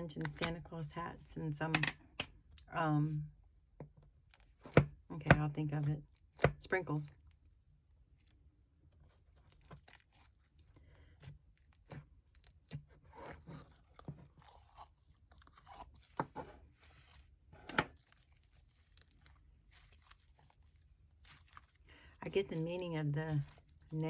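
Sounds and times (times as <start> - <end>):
hands squishing slime: 9.0 - 24.0.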